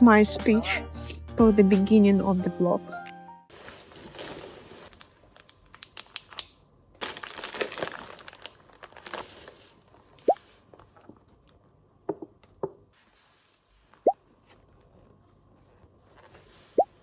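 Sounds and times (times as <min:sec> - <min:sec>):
crinkling handling noise: 0:03.5 - 0:17.0.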